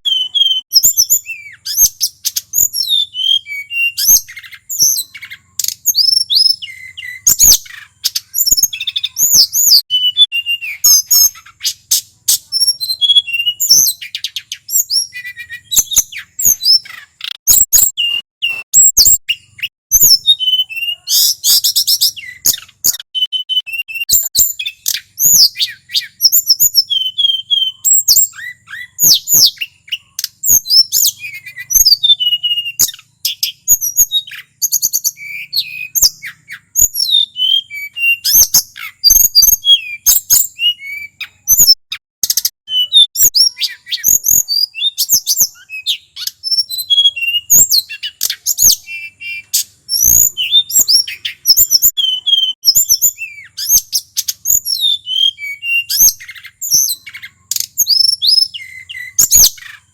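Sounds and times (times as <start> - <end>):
bird song with chirps and trills: 0.0 - 59.9
sharp bird clicks: 0.1 - 2.9, 4.0 - 9.8, 10.8 - 12.7, 28.0 - 32.0, 40.9 - 46.6, 55.7 - 59.9.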